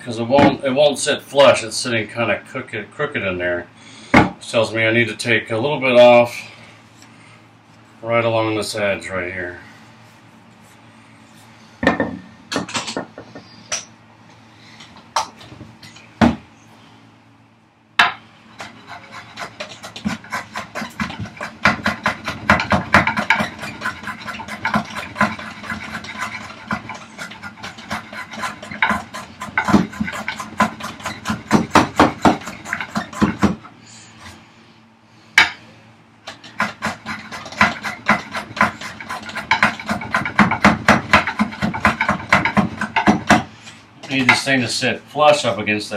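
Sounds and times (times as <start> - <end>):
hand tool strokes on wood: 18.6 - 34.4, 36.4 - 40.5.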